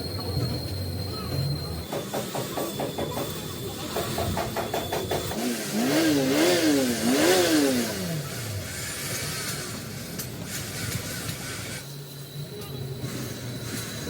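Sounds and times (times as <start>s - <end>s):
engine revving: 5.3s - 9.9s.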